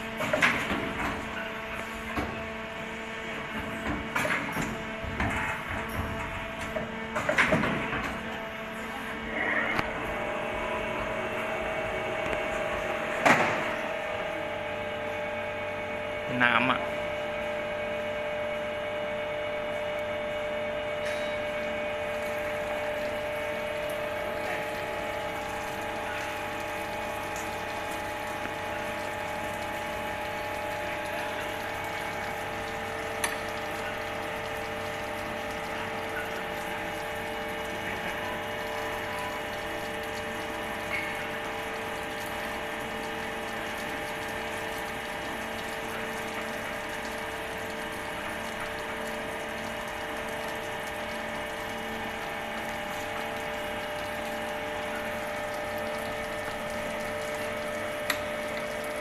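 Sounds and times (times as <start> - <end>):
machining center whine: 0.0 - 59.0.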